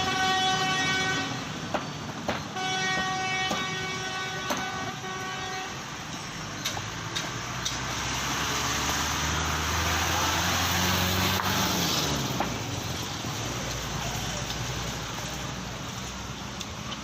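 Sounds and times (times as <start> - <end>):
street traffic: 0.0 - 17.0
vehicle engine passing: 6.4 - 16.2.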